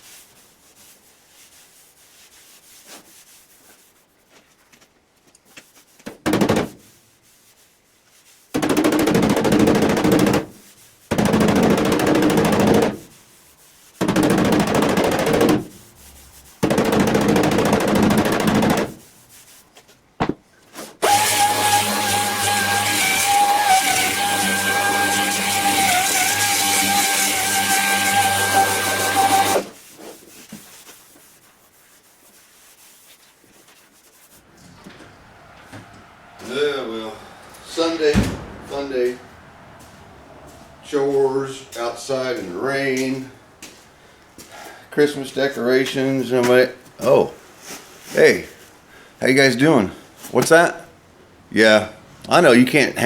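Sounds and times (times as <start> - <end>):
power tool rattling buzz: 21.0 - 29.8
faint knocks: 37.4 - 40.7.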